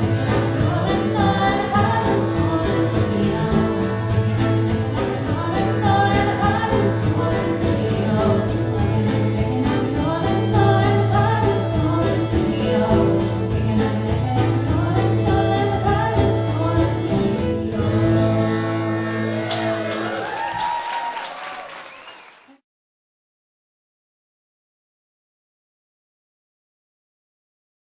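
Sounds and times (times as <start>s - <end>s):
folk band playing: 0.0s - 20.5s.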